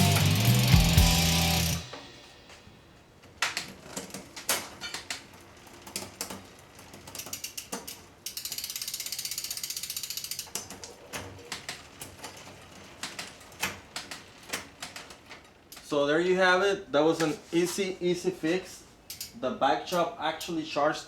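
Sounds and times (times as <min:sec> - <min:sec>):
bike chain clicking across cogs: 0:03.5 - 0:15.9
freehub ratcheting ticks: 0:05.0 - 0:10.8, 0:19.1 - 0:19.4.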